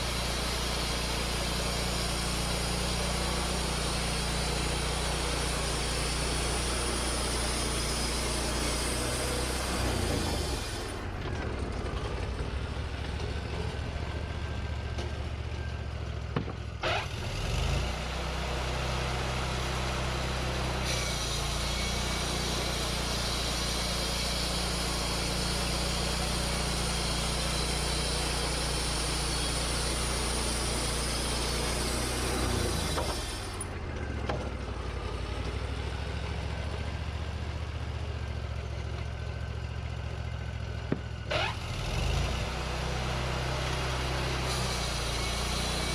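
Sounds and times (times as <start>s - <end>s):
band blade cutting log: 0.0s - 11.1s, 16.8s - 17.2s, 20.8s - 33.6s, 41.3s - 42.4s, 43.9s - 45.9s
sawmill engine revving: 0.0s - 15.5s, 16.8s - 39.1s, 39.8s - 45.9s.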